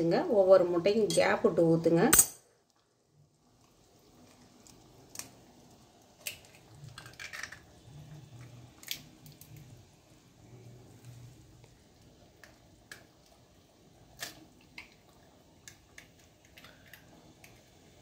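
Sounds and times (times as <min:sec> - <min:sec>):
eggs cracking: 0:03.5 - 0:09.8, 0:12.0 - 0:17.8.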